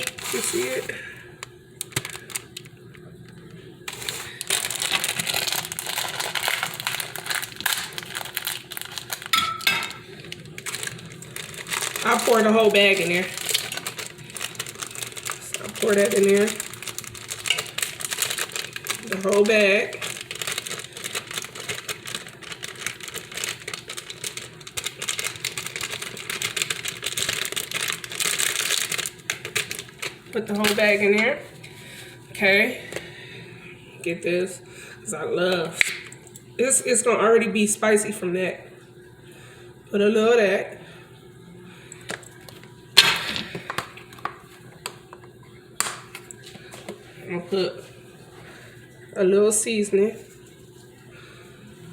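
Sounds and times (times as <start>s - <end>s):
bag crinkling and rustling: 0.0s - 32.2s
contents pouring into pot: 3.9s - 30.2s.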